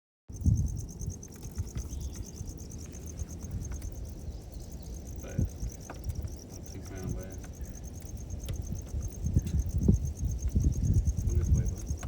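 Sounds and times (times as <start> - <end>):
insects chirping in pulses: 0.3 - 12.0.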